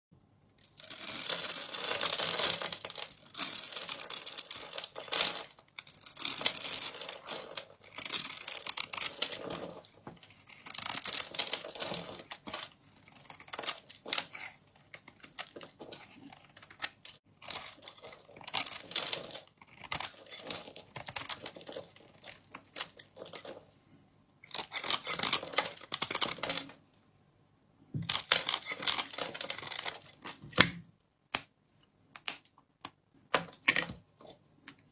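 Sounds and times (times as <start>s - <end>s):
knife scraping soap: 0.7s - 23.7s, 24.4s - 26.4s, 28.1s - 30.2s.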